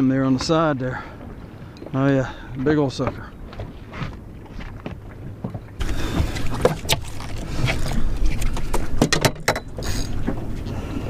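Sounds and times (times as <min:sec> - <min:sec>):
water splashing beside boat: 0:00.0 - 0:11.0
fish thrashing at surface: 0:05.8 - 0:09.0.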